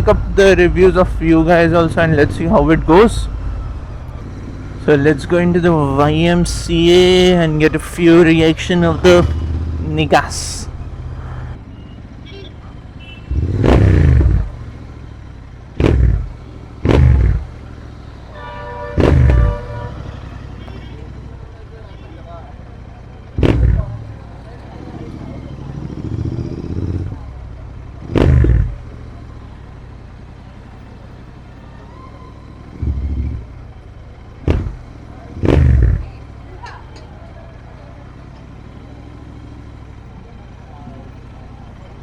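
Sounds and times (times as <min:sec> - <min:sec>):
motorcycle engine idling: 0:00.0 - 0:42.0
motorcycle engine revving: 0:00.0 - 0:42.0
exhaust pops and bangs: 0:13.3 - 0:14.8, 0:15.7 - 0:19.9, 0:23.3 - 0:24.2, 0:28.0 - 0:29.5, 0:34.3 - 0:37.1.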